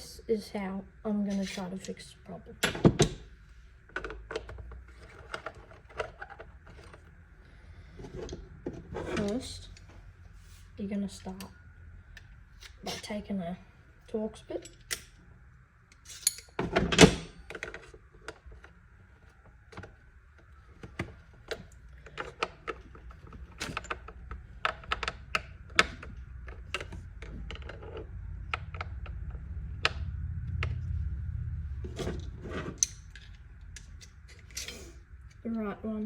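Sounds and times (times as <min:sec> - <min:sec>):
low rumble: 0:25.6 - 0:36.0.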